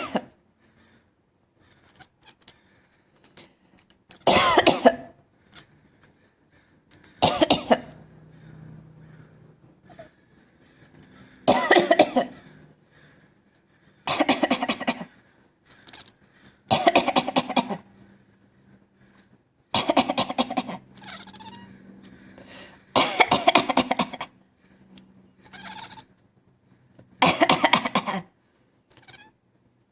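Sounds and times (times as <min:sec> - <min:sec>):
cat coughing: 0:00.0 - 0:00.4, 0:04.2 - 0:05.2, 0:07.2 - 0:08.0, 0:11.4 - 0:12.4, 0:14.0 - 0:15.2, 0:16.7 - 0:17.9, 0:19.7 - 0:21.4, 0:22.9 - 0:24.4, 0:27.2 - 0:28.4.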